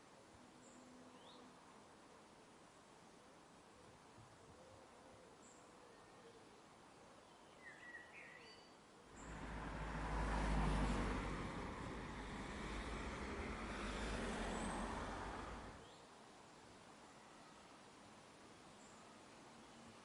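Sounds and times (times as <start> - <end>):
vehicle passing: 9.2 - 15.8.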